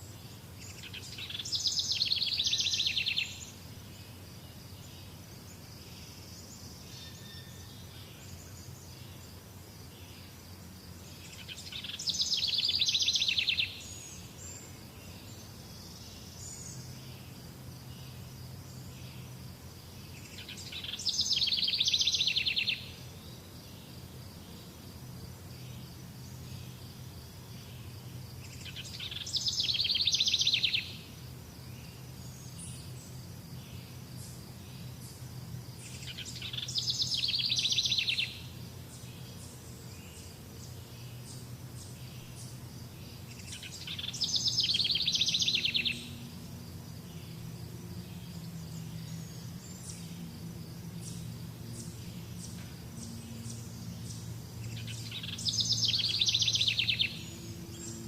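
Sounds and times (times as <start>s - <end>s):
faint chirps: 0.0s - 58.0s
high insect drone: 0.0s - 58.0s
bird trilling song: 0.6s - 3.6s, 11.2s - 17.3s, 20.1s - 23.1s, 28.4s - 31.1s, 35.8s - 46.4s, 48.1s - 58.0s.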